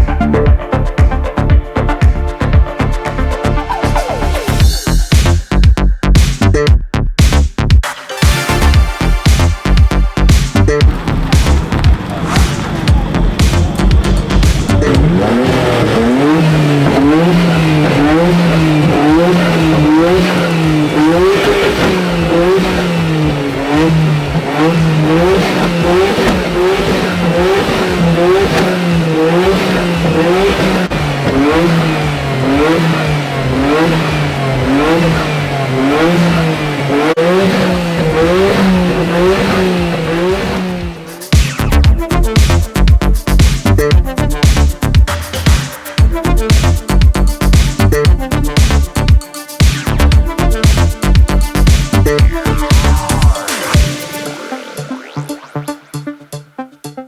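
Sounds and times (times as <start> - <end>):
car engine revving: 8.4 - 56.4.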